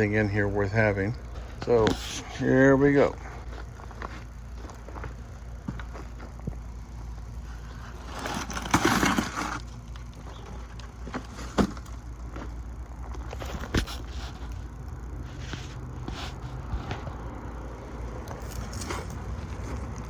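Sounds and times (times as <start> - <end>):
soil and plants rustling scrape: 7.4 - 11.8, 13.3 - 17.2, 18.3 - 20.0.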